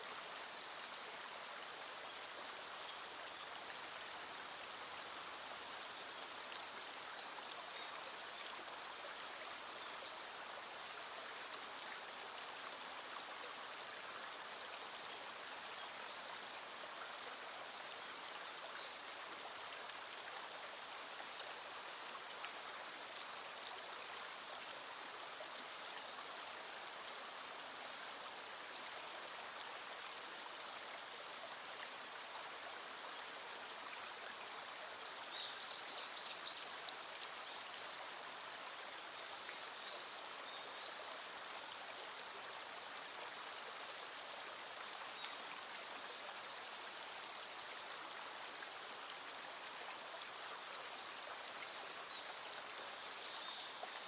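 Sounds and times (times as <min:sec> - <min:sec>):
stream flowing over stones: 0:00.0 - 0:54.0.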